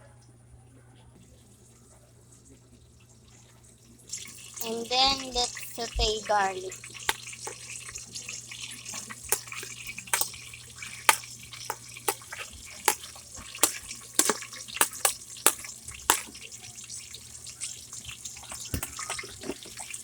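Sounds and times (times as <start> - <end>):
garlic sizzling in hot oil: 4.1 - 20.0.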